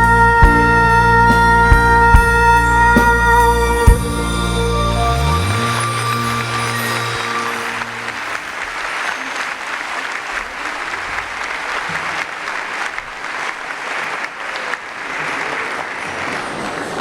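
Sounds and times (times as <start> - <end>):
music held notes: 0.0 - 9.9
audience applauding: 0.0 - 17.0.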